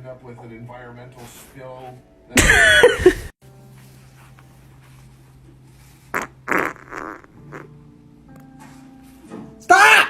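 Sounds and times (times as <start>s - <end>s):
person farting: 6.1s - 7.8s.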